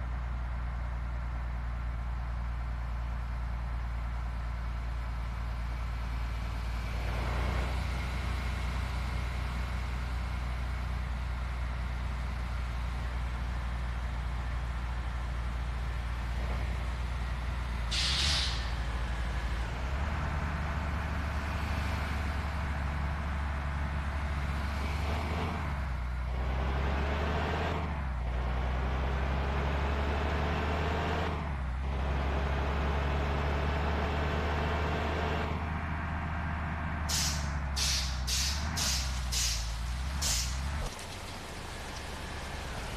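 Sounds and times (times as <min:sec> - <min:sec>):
bus diesel engine accelerating: 0:00.0 - 0:42.9
pneumatic hiss: 0:17.9 - 0:18.8, 0:37.1 - 0:40.6.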